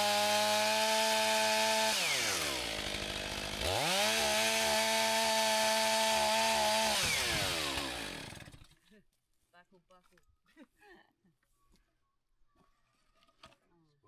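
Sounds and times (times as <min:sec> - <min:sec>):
chainsaw revving and idling: 0:00.0 - 0:08.7.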